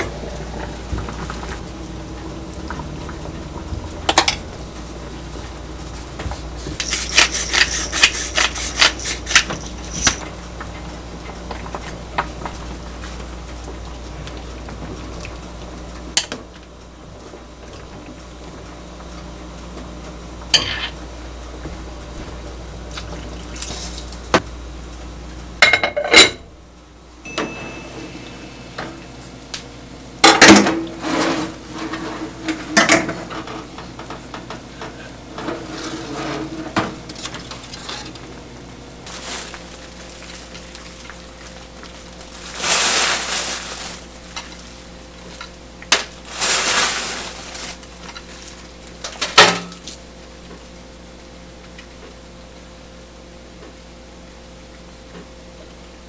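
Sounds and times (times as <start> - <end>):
dishes scraping: 6.6 - 10.4, 20.6 - 21.0, 30.3 - 38.4.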